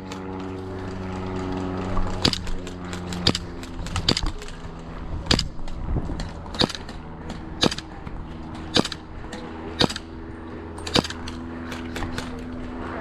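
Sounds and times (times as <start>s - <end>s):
airsoft gun shots: 2.2s - 4.6s, 5.3s - 5.7s, 6.5s - 7.0s, 7.6s - 7.9s, 8.7s - 10.2s, 10.8s - 12.6s.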